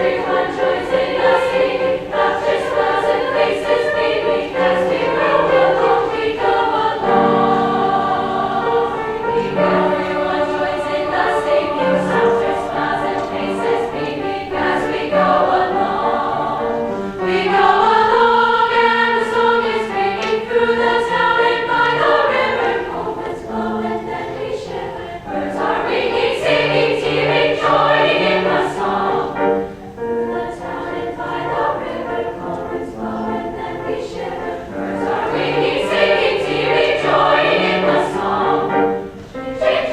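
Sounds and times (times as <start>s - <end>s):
choir singing in parts: 0.0s - 39.9s.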